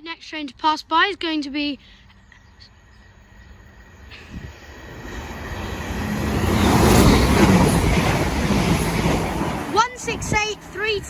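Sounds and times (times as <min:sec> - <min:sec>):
train wheels rumbling: 0:03.2 - 0:11.0.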